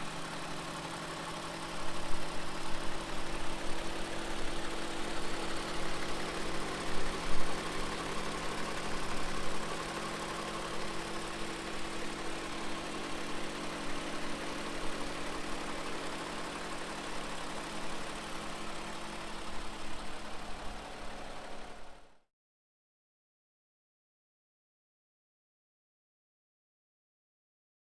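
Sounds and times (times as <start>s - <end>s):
car engine idling: 0.0s - 22.1s.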